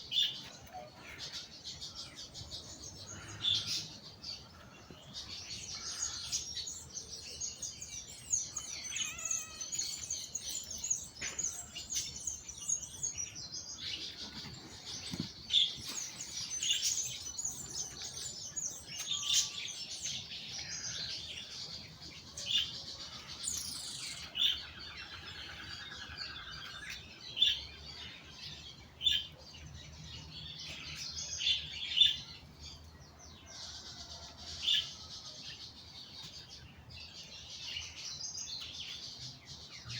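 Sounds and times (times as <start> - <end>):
songbirds chirping: 0.0 - 39.9.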